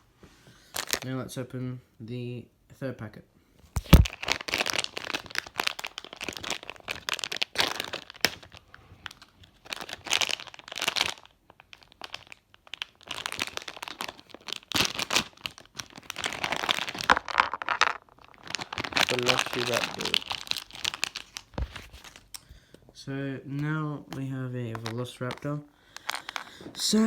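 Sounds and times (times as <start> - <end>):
plastic packet tearing and crinkling: 0.7 - 1.1, 3.8 - 22.4, 24.7 - 27.0.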